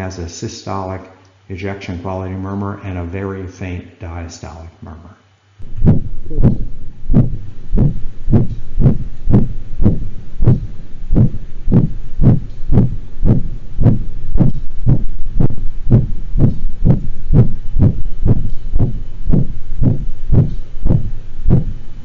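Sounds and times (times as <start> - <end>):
dog heartbeat: 5.6 - 21.8
heart murmur: 5.6 - 21.8.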